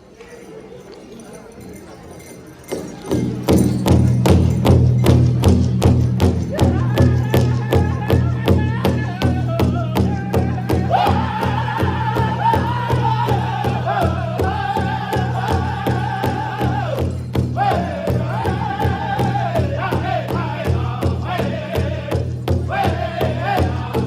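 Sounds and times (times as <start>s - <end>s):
steady big drum beat: 3.4s - 24.0s
voices singing high in unison: 9.0s - 24.0s.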